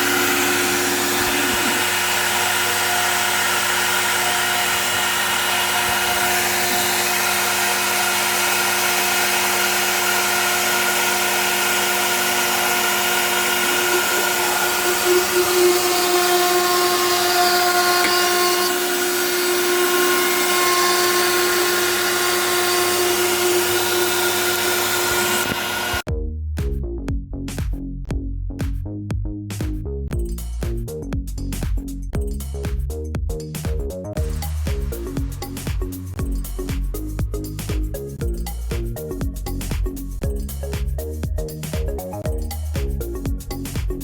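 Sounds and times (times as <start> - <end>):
router spindle whining: 0.0 - 26.1.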